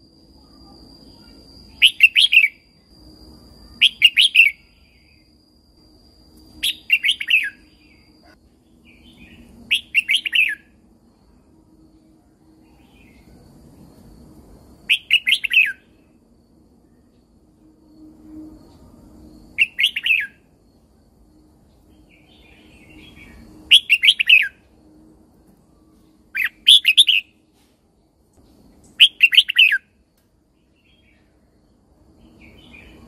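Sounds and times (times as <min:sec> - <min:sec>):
thin steady high tone: 0:00.0 - 0:33.0
bird singing: 0:00.4 - 0:02.8, 0:03.7 - 0:05.4, 0:06.5 - 0:10.8, 0:12.6 - 0:13.5, 0:14.9 - 0:15.9, 0:18.6 - 0:20.8, 0:21.6 - 0:24.8, 0:25.6 - 0:27.4, 0:28.4 - 0:33.0.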